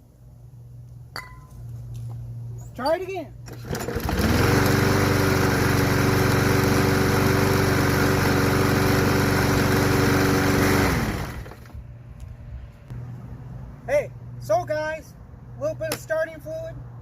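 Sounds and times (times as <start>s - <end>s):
lawn mower engine running: 3.4s - 11.9s.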